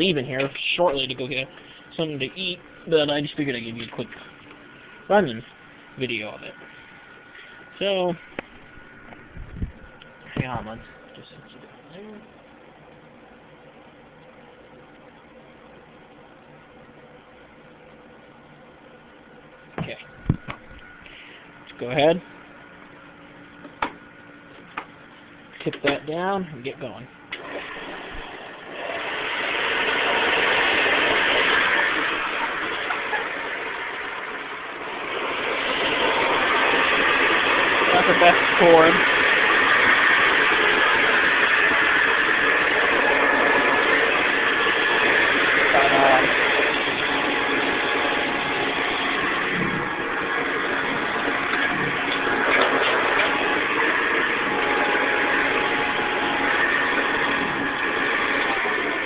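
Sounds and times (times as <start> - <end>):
vacuum cleaner running: 0.0 - 5.4, 27.3 - 59.0.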